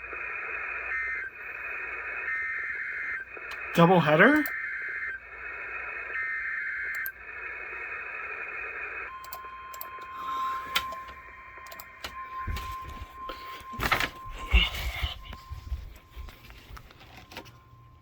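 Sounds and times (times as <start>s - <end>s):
clicks: 3.4s - 5.2s, 6.8s - 7.2s, 9.1s - 13.0s
steady alert tone: 9.1s - 16.2s.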